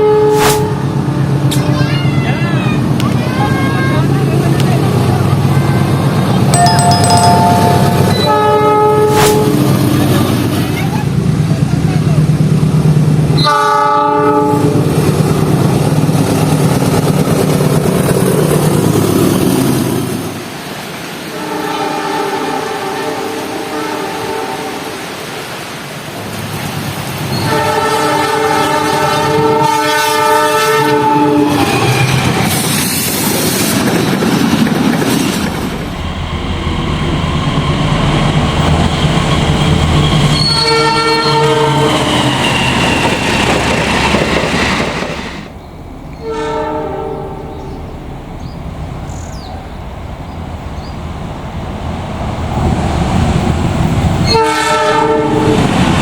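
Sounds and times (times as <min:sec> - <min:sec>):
locomotive horn blast: 0:00.0 - 0:01.8, 0:05.4 - 0:09.9, 0:13.4 - 0:14.9, 0:21.3 - 0:24.9, 0:27.3 - 0:32.0, 0:40.3 - 0:42.0, 0:46.2 - 0:47.5, 0:54.2 - 0:55.6
train rumbling: 0:00.0 - 0:56.0.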